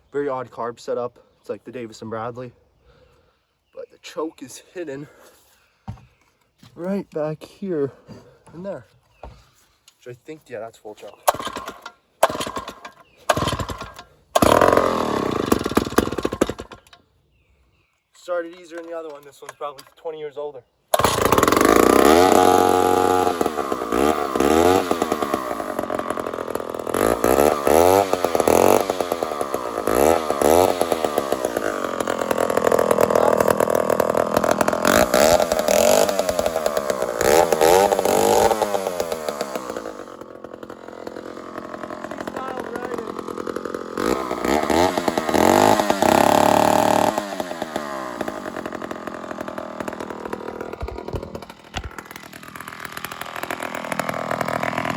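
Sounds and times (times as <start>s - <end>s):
chainsaw revving and idling: 11.0s - 17.0s, 18.5s - 19.2s, 20.9s - 54.9s.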